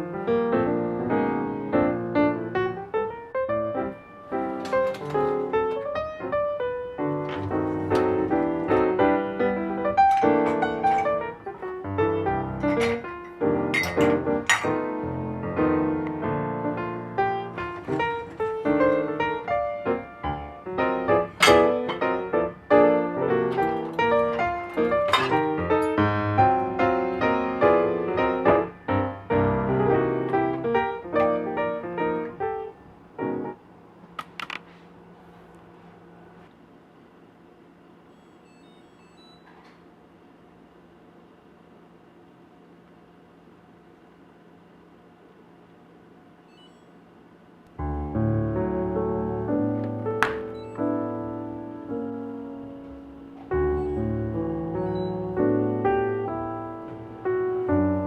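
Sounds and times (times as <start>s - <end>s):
piano music: 0.0s - 33.7s, 47.8s - 58.0s.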